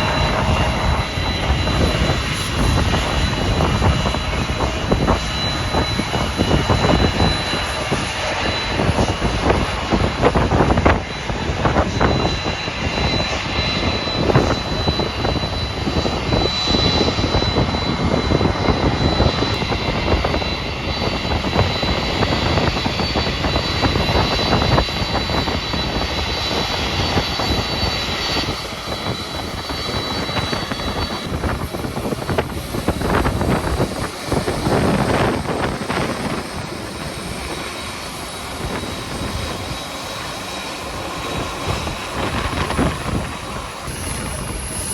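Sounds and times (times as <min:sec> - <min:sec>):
jet engines whining: 0:00.0 - 0:44.9
wind on microphone: 0:00.0 - 0:44.9.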